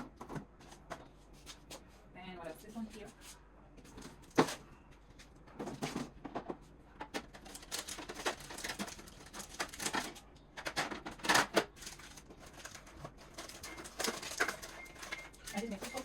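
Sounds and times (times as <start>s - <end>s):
packages rustling and knocking: 3.8s - 16.0s
containers clattering: 5.6s - 16.0s.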